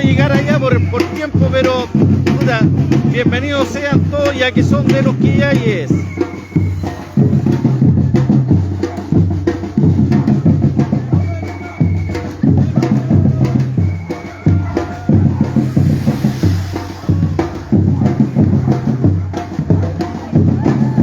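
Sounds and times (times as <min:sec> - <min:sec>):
bass drums beating: 0:12.4 - 0:21.0
sharp strikes on higher drums: 0:13.0 - 0:20.7
short high held tone: 0:14.3 - 0:18.8.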